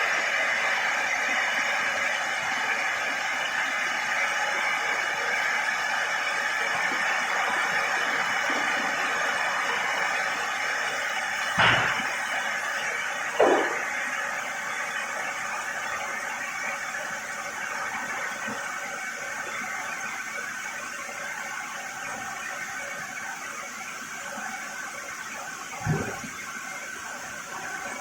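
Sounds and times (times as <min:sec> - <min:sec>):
faint machinery whine: 0:00.0 - 0:28.0.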